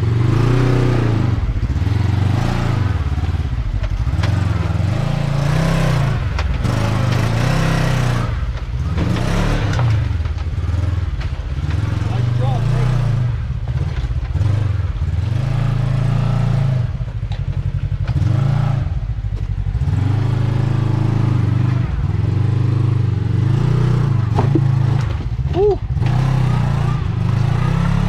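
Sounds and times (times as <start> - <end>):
engine revving in throttle bursts: 0.0 - 3.2, 26.0 - 28.0.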